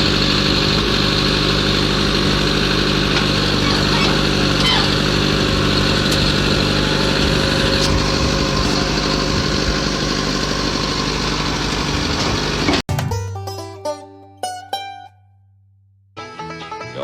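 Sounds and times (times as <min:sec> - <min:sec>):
tractor engine running: 0:00.0 - 0:13.6.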